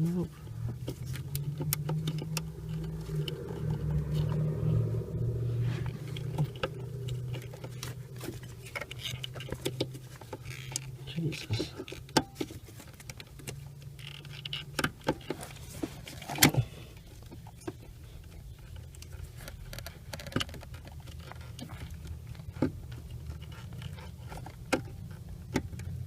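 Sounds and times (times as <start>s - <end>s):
metal tools clicking and scraping: 6.0s - 16.7s.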